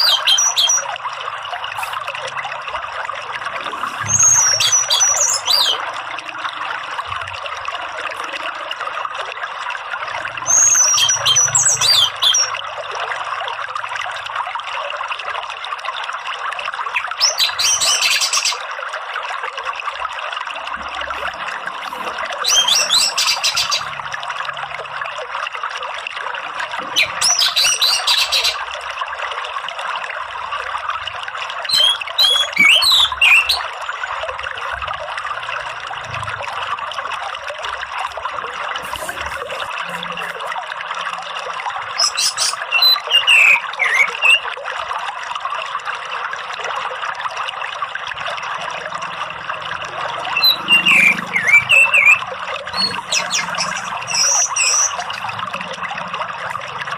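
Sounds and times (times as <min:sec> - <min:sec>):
running water rushing: 0:00.0 - 0:56.9
thrush chattering and whistling: 0:03.6 - 0:05.9, 0:21.2 - 0:23.9, 0:31.7 - 0:33.7, 0:41.9 - 0:44.5, 0:50.3 - 0:56.7.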